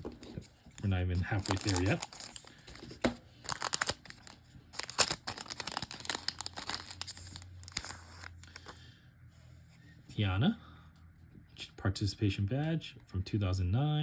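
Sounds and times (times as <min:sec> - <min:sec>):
handling of cards: 0:00.0 - 0:08.8
wrapper tearing and crinkling: 0:00.8 - 0:02.8, 0:03.4 - 0:08.7.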